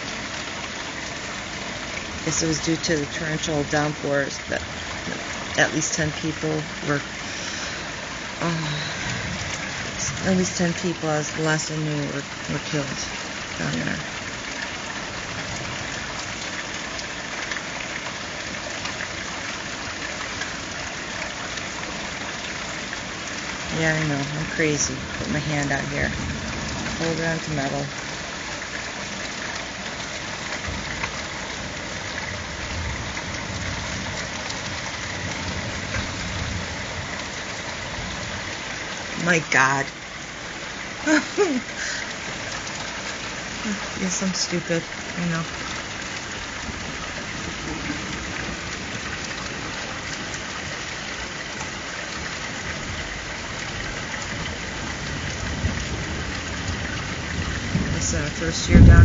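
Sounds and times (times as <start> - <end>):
heavy rain hissing: 0.0 - 59.0
thunder rumble: 24.5 - 27.5, 30.6 - 38.4, 53.8 - 59.0.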